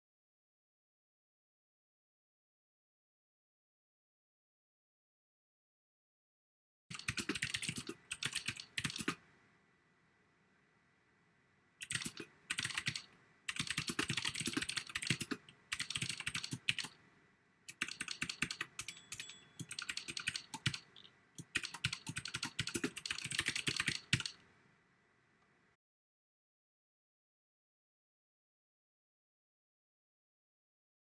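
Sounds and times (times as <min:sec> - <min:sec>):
keyboard typing clicks: 0:06.9 - 0:09.2, 0:11.8 - 0:17.0, 0:17.7 - 0:24.5.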